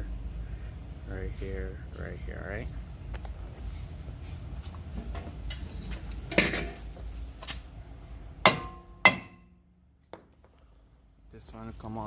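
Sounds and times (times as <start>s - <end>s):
hammer striking metal: 8.4s - 9.6s.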